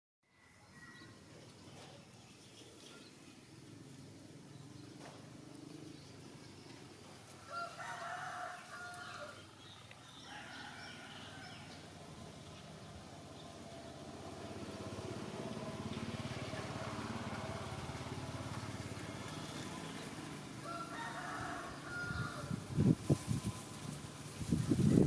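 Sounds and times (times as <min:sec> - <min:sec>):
rooster crowing: 0:07.4 - 0:09.4, 0:10.2 - 0:11.8, 0:20.6 - 0:22.6.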